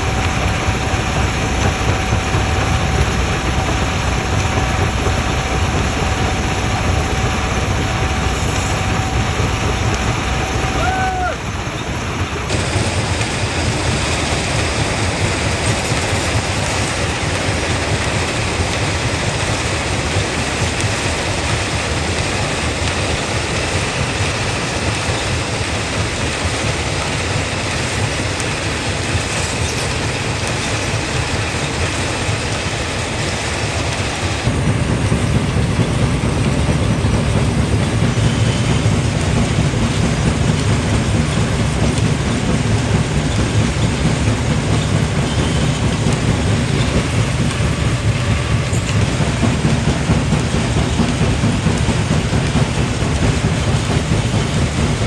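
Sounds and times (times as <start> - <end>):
rock crusher rumbling and grinding: 0.0 - 33.2.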